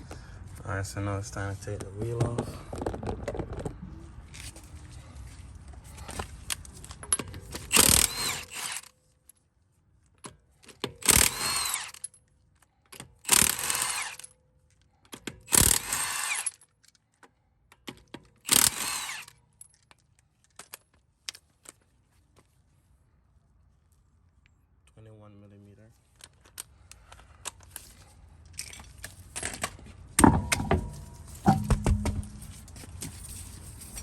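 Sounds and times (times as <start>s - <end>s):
impact wrench bursts: 7.7s - 8.9s, 11.0s - 12.0s, 13.3s - 14.2s, 15.5s - 16.5s, 18.5s - 19.4s.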